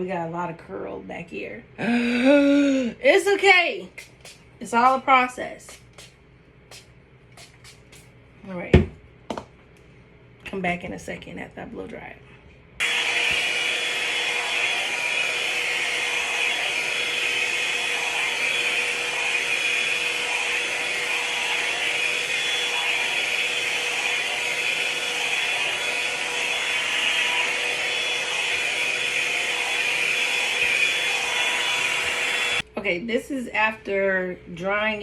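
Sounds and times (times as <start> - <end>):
hair dryer blowing: 3.9 - 5.1, 6.7 - 8.1, 12.8 - 32.7.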